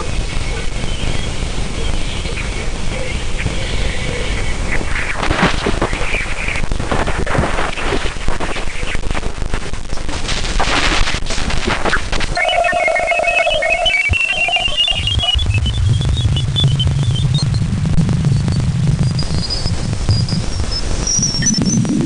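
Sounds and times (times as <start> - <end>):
dense crackling static: 0.0 - 22.0
low hum: 11.4 - 22.0
electronic beeps rising in pitch: 12.4 - 17.6.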